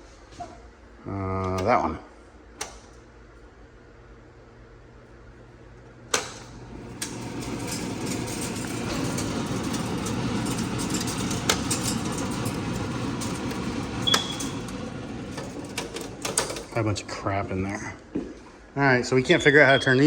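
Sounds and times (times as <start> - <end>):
fan rushing: 5.4 - 19.6.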